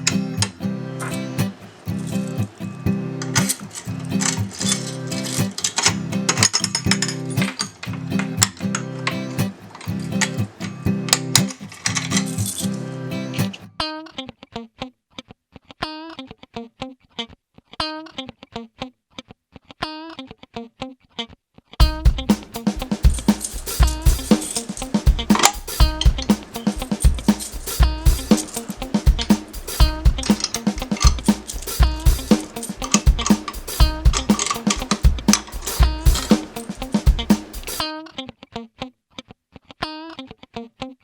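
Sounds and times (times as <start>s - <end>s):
plucked guitar riff: 0.0s - 14.3s, 21.8s - 38.3s
drum-kit beat: 3.3s - 10.7s, 21.8s - 37.8s.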